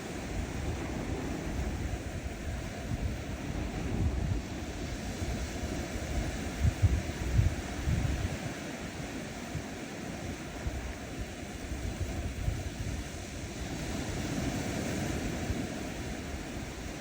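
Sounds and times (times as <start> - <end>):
small waves washing onto beach: 0.0 - 17.0
wind buffeting microphone: 0.0 - 17.0.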